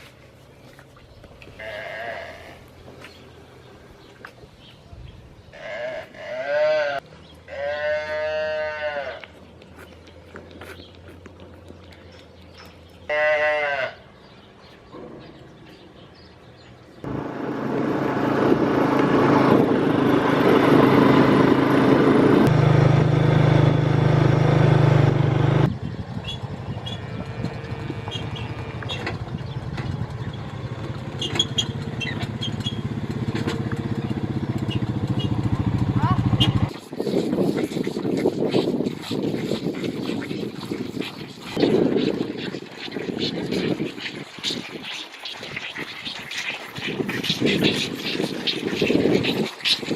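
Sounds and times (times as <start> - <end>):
small vehicle engine running: 17.1 - 25.8, 26.4 - 36.7.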